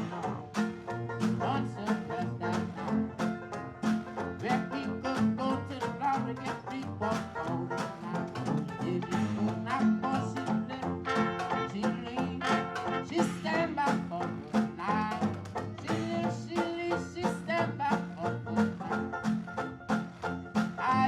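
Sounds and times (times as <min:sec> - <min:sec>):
bass line: 0:00.0 - 0:21.0
jazz band playing swing: 0:00.0 - 0:21.0
trombone: 0:00.0 - 0:21.0.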